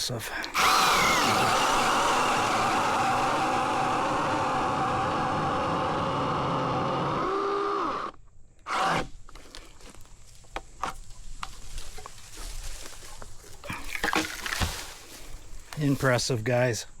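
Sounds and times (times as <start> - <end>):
chainsaw motor winding down: 0.5 - 9.5
wood and leaves snapping: 9.1 - 15.9.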